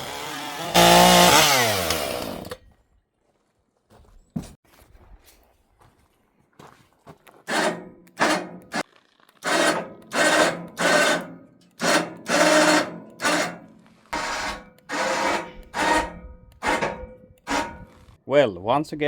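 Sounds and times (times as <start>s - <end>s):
hand saw cutting wood: 0.0s - 2.6s, 7.4s - 8.8s, 9.4s - 18.0s.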